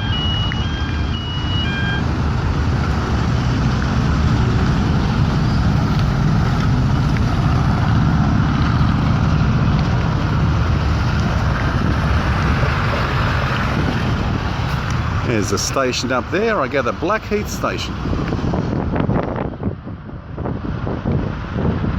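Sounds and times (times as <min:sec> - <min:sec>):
electronic beeps: 0:00.0 - 0:02.1
car engine and road noise: 0:00.0 - 0:21.9.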